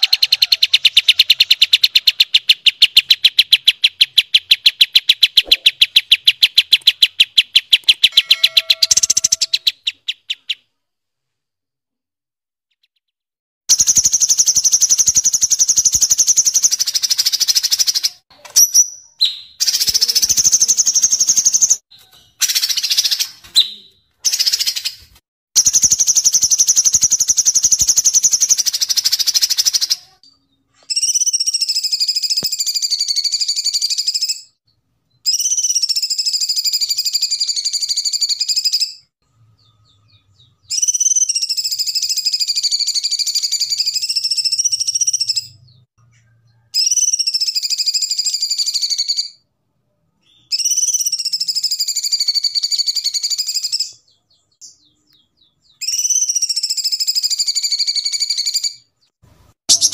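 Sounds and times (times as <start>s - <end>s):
songbirds singing: 50.2s - 59.9s.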